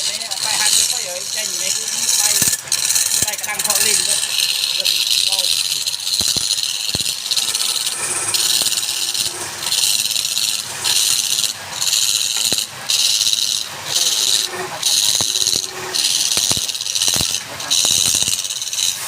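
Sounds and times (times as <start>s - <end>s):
wood rasping on a lathe: 0.0s - 19.0s
sharp clicks: 6.0s - 8.9s, 15.1s - 18.4s.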